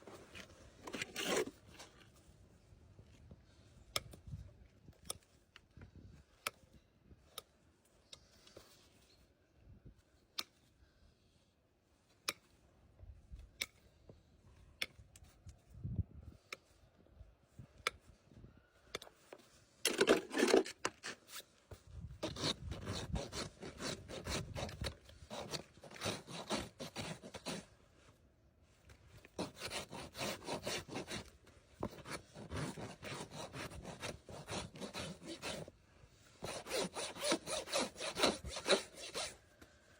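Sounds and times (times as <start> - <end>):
rasp filing hoof: 0.8 - 1.5, 22.2 - 27.7, 29.3 - 35.7, 36.4 - 39.4.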